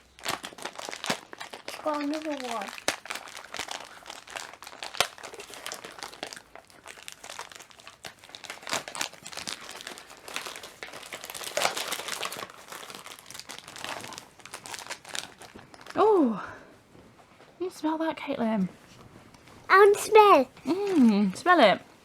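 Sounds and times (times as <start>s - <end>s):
plastic packaging crinkling: 0.0s - 16.0s.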